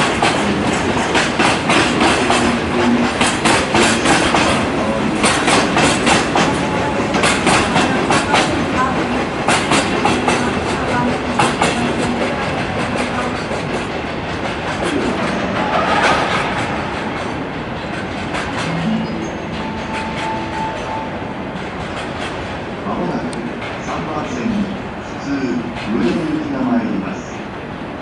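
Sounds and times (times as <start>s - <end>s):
train wheels clacking over rail joints: 0.0s - 18.7s
train rumble: 0.0s - 28.0s.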